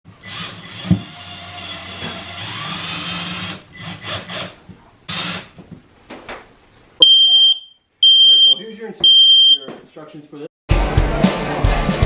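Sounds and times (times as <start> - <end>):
power drill running: 0.1 - 5.5.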